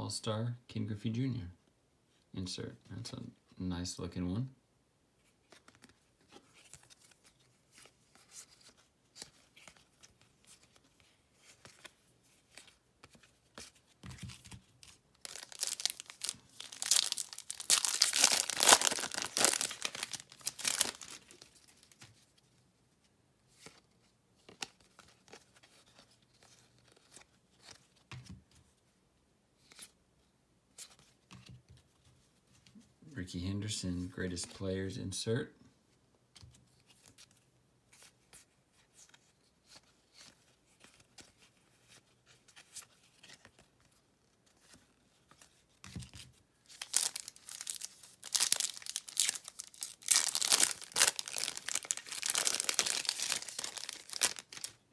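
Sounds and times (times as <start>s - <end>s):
wrapper tearing and crinkling: 15.2s - 21.9s, 46.7s - 54.8s.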